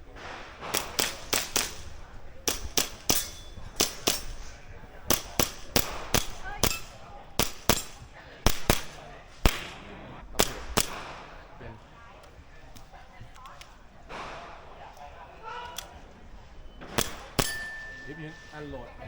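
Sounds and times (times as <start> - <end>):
airsoft pistol pops: 5.1 - 11.4.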